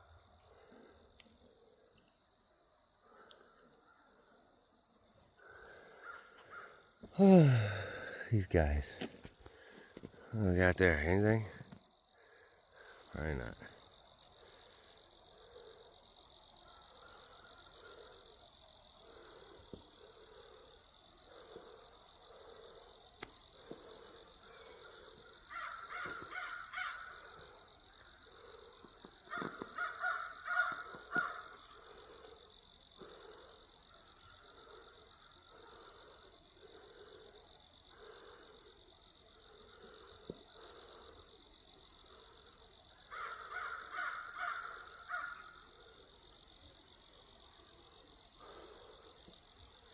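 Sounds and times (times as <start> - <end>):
crows cawing: 5.4 - 6.8, 25.5 - 27.4, 29.3 - 31.6, 43.1 - 45.5.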